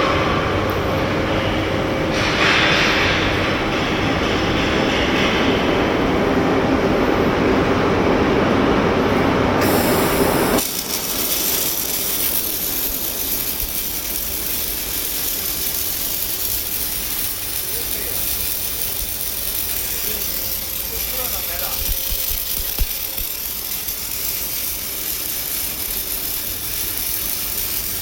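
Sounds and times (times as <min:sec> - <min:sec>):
steady hiss: 0:09.6 - 0:28.0
welding machinery noise: 0:09.6 - 0:28.0.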